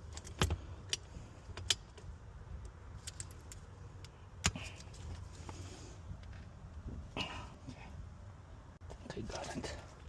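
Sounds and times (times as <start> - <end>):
metal parts clicking and clanking: 0.0 - 2.1, 2.9 - 5.6.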